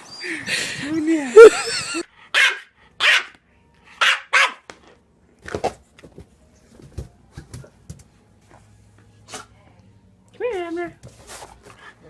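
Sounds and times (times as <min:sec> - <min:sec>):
dog barking: 0:02.3 - 0:03.4, 0:04.0 - 0:04.7.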